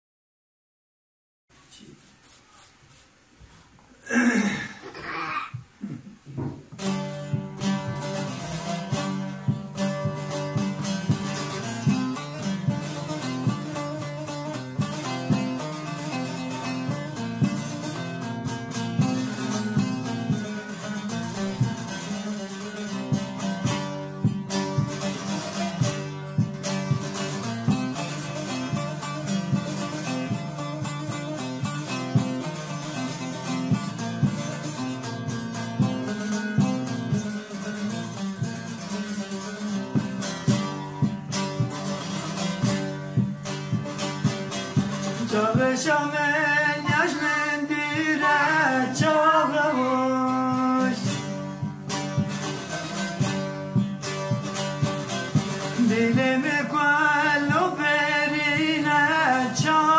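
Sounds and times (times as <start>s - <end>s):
plucked string instrument strumming: 6.2s - 59.9s.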